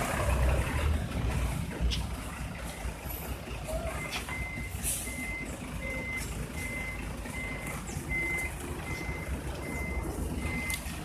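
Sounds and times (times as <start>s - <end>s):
engine rumble: 0.0s - 11.0s
reversing alarm beeping: 2.6s - 10.9s.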